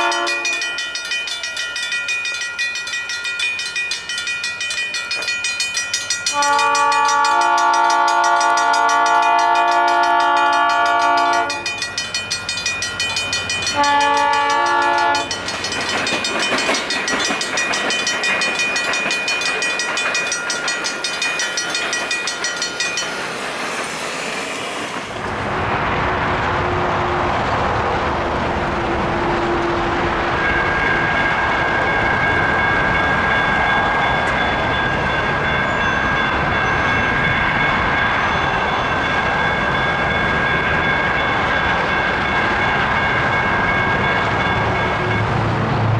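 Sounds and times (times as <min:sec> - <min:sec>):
steady high tone: 0:00.0 - 0:25.3
railroad crossing bell ringing: 0:00.0 - 0:25.5, 0:29.5 - 0:45.9
train rumbling past: 0:00.0 - 0:45.9.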